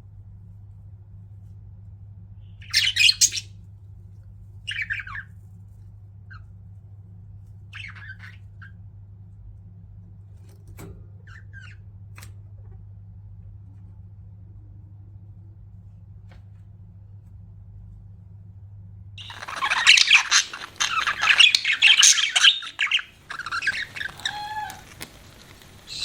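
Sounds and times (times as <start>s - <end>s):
steady low hum: 0.0s - 26.0s
budgerigars chirping: 2.6s - 3.5s, 4.7s - 5.3s, 7.7s - 8.7s, 19.2s - 26.0s.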